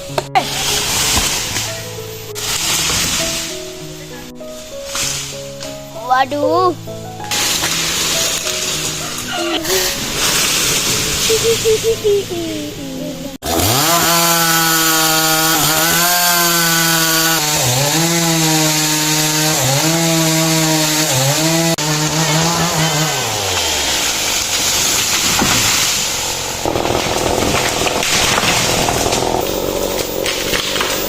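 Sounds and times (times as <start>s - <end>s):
small two-stroke engine running: 13.4s - 31.0s.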